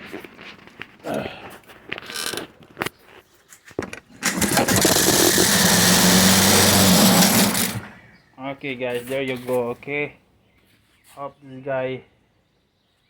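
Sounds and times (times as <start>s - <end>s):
knocks and rattles: 3.8s - 8.0s
lawn mower engine running: 4.0s - 8.0s.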